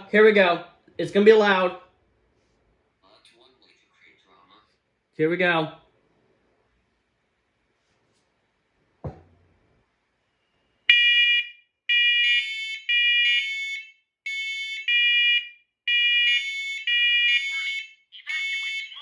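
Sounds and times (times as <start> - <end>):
knock: 9.0 - 9.5
smoke alarms beeping: 10.9 - 19.0.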